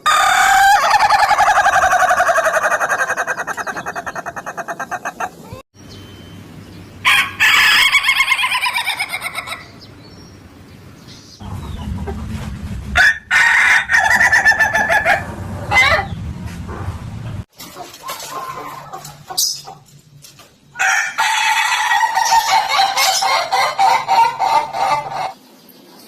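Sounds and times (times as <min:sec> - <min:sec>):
roosters crowing like laughter: 0:00.0 - 0:05.6, 0:07.0 - 0:09.8, 0:13.0 - 0:16.1, 0:20.8 - 0:25.4.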